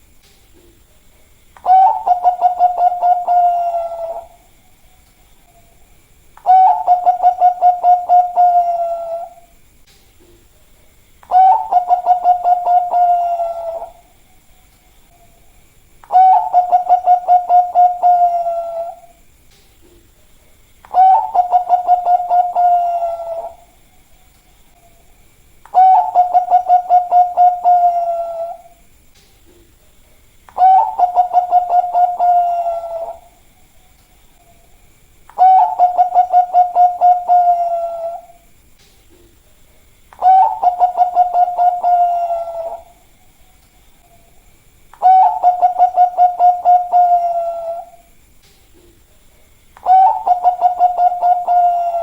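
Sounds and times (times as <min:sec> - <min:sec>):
dove cooing: 0:01.6 - 0:04.5, 0:06.4 - 0:09.5, 0:11.2 - 0:14.1, 0:16.1 - 0:19.2, 0:20.9 - 0:23.8, 0:25.7 - 0:28.8, 0:30.5 - 0:33.4, 0:35.3 - 0:38.4, 0:40.2 - 0:43.1, 0:45.0 - 0:48.1, 0:49.8 - 0:52.0.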